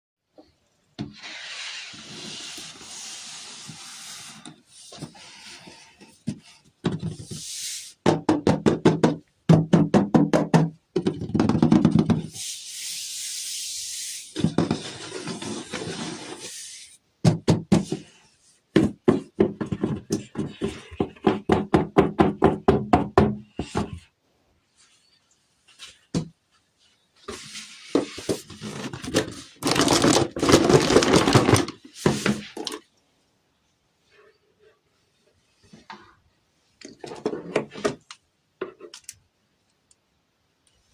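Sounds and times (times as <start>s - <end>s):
plastic packaging crinkling: 28.7s - 31.8s.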